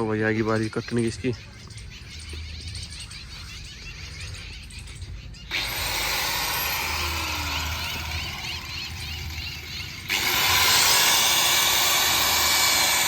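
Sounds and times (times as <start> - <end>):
angle grinder cutting metal: 5.5 - 13.0.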